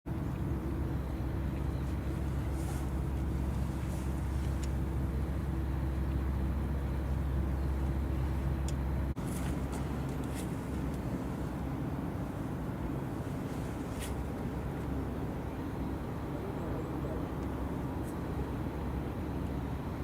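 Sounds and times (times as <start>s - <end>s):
low engine hum: 0.1s - 20.0s.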